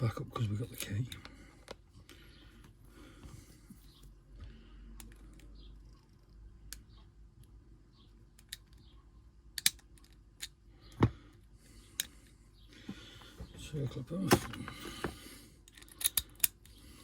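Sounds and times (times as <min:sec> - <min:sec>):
padlock clicks and taps: 0:09.5 - 0:10.6, 0:15.7 - 0:16.7.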